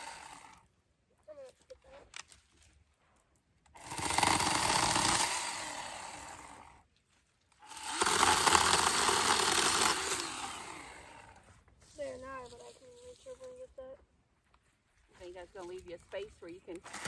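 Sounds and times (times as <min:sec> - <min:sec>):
chainsaw cutting branches: 0:00.0 - 0:00.7, 0:03.7 - 0:06.9, 0:07.6 - 0:13.6, 0:15.2 - 0:17.0.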